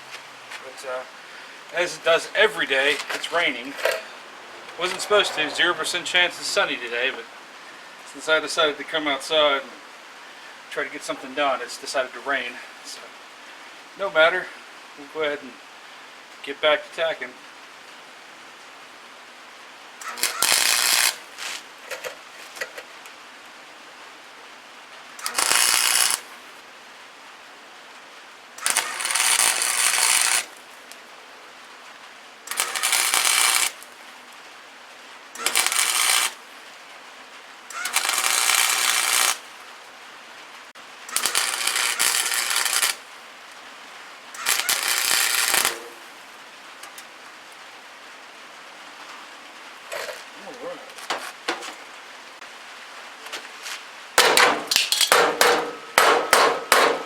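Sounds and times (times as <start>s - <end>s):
crackling welding arc: 1.7s - 7.2s, 20.0s - 22.9s, 25.1s - 26.6s, 28.6s - 31.1s, 32.4s - 34.5s, 35.3s - 36.8s, 37.7s - 39.9s, 40.7s - 43.6s, 44.3s - 47.1s, 54.2s - 57.0s.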